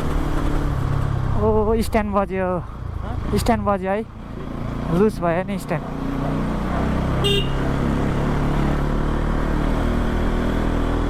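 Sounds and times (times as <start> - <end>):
motorcycle engine running: 2.9 - 11.0
horn toot: 7.2 - 7.7.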